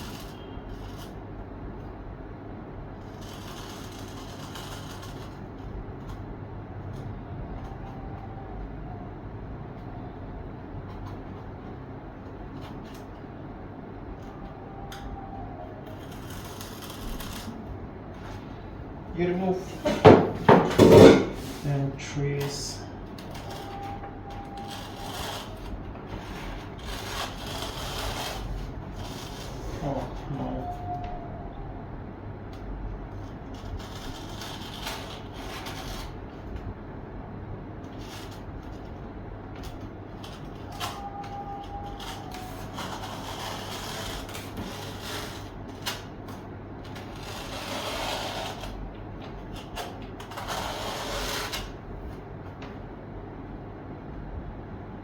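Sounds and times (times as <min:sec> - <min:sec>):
steady low hum: 0:00.0 - 0:55.0
scraping and rustling: 0:15.8 - 0:30.8
hand tool scraping foam: 0:24.6 - 0:30.1, 0:47.0 - 0:48.8, 0:50.2 - 0:51.7.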